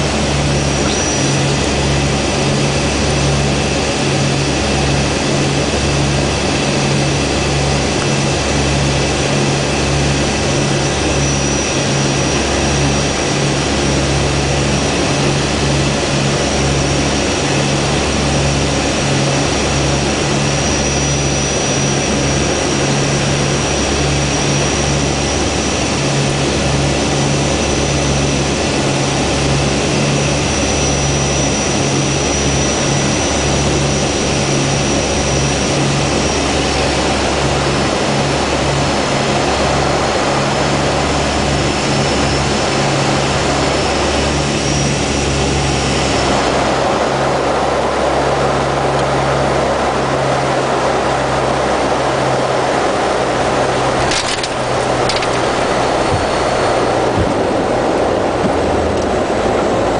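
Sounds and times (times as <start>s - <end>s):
propeller engine drone: 0.0s - 59.9s
thin high whine: 0.1s - 4.5s, 53.5s - 58.2s.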